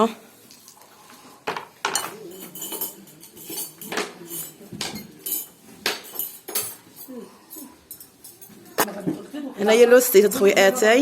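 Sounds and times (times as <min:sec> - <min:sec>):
cutlery and dishes clinking: 0:01.4 - 0:08.9.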